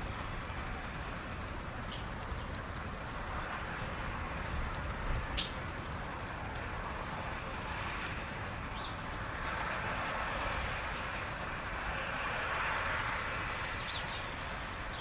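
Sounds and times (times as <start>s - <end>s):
outdoor background noise: 0.0s - 15.0s
small birds chirping: 3.4s - 4.6s.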